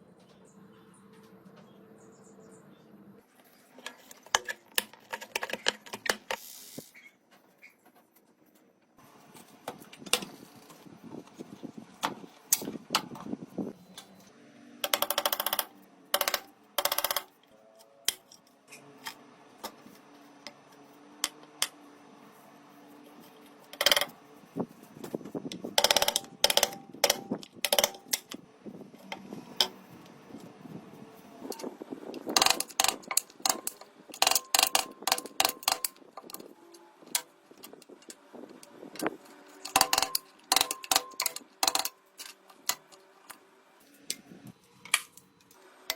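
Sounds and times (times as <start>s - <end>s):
small tools clicking and knocking: 3.7s - 7.4s, 14.8s - 19.8s, 23.3s - 24.2s, 25.0s - 28.4s, 31.4s - 43.4s.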